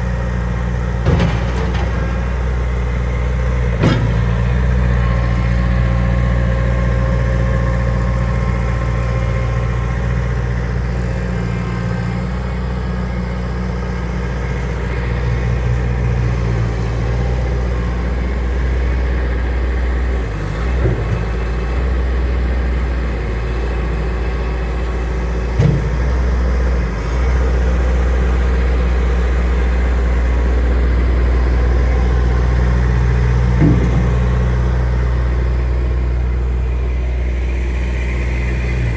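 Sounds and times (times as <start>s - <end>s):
loader engine running: 0.0s - 38.9s
short metallic clanks: 1.0s - 2.8s.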